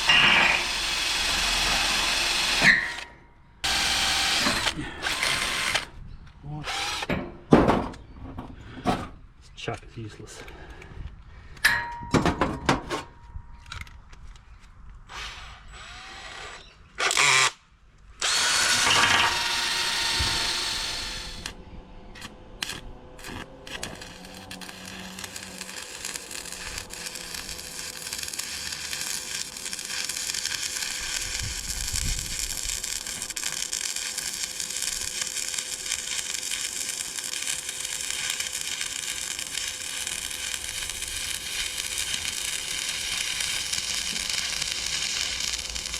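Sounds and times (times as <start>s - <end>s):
arc welder crackling and sizzling: 18.2s - 21.6s, 22.2s - 45.9s
power tool spinning down: 18.2s - 21.6s.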